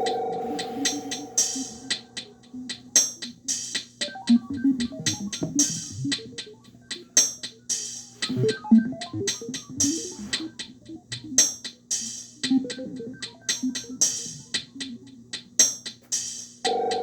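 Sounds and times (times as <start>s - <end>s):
drum machine beat: 0.0s - 17.0s
hissy percussion hits: 0.0s - 17.0s.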